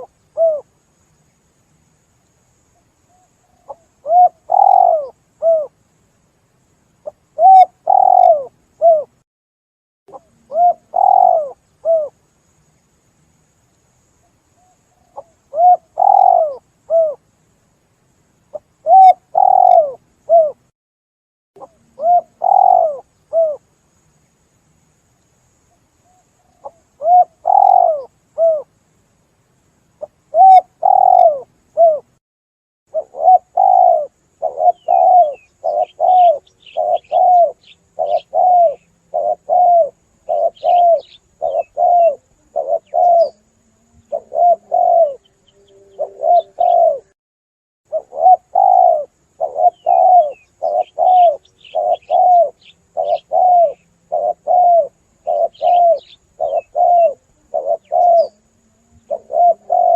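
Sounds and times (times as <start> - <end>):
doves cooing: 0.0 - 0.7, 3.5 - 5.7, 7.0 - 9.1, 10.4 - 12.1, 14.6 - 17.2, 18.5 - 20.6, 21.6 - 23.6, 26.5 - 28.7, 30.0 - 32.1, 32.9 - 47.2, 47.9 - 59.9
faint small bird chirps: 0.0 - 5.8, 6.6 - 9.2, 10.1 - 17.3, 18.5 - 20.7, 21.6 - 28.8, 29.9 - 32.2, 32.9 - 47.2, 47.9 - 59.9.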